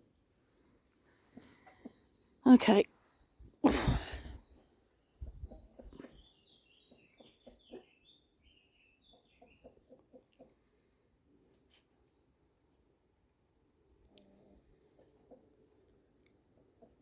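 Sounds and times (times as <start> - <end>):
chickens clucking softly: 3.8 - 12.2, 13.8 - 17.0.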